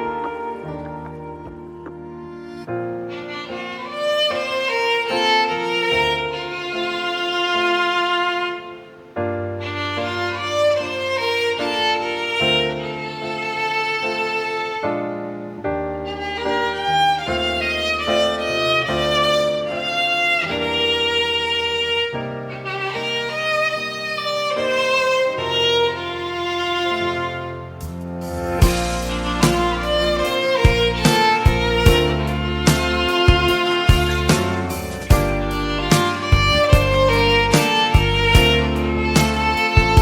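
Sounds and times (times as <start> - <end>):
violin playing a lyrical melody: 3.0 - 40.0
held low bass notes: 27.8 - 40.0.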